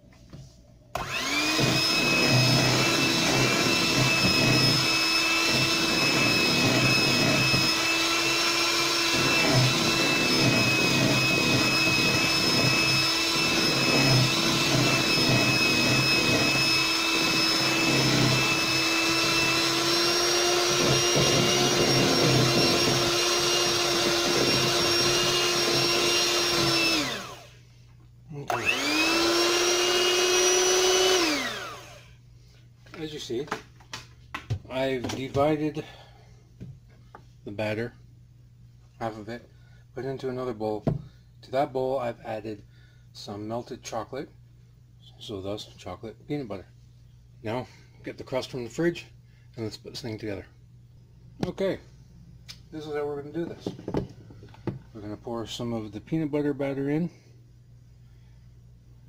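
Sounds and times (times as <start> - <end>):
electric mixer motor running: 1.0 - 27.6, 28.5 - 32.1.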